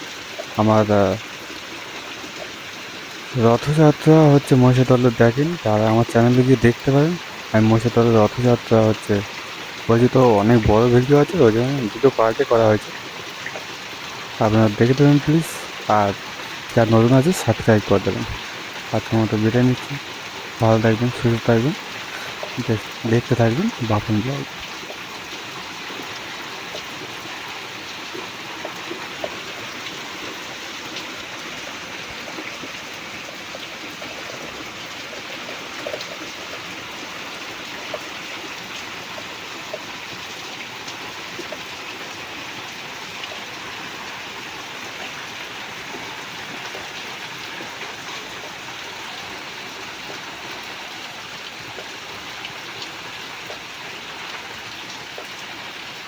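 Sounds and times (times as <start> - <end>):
steady rain falling: 0.0 - 56.0
water drips: 0.0 - 56.0.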